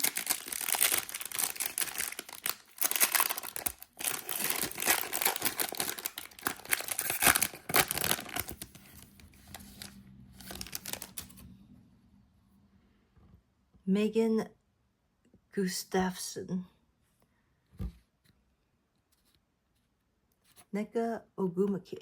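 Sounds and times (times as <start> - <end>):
wrapper tearing and crinkling: 0.0 - 11.4.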